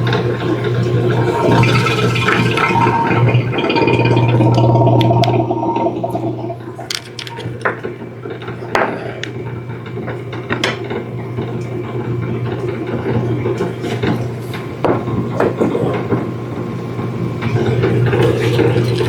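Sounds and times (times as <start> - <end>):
metallic clicks of small parts: 6.9 - 7.7.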